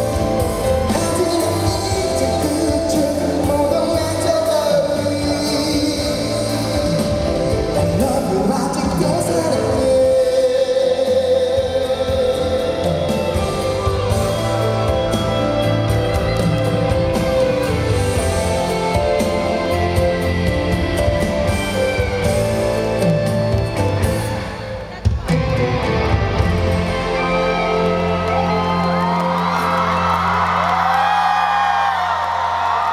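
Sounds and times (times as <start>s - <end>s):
person singing: 0.0s - 24.3s
live pop band playing: 0.0s - 32.9s.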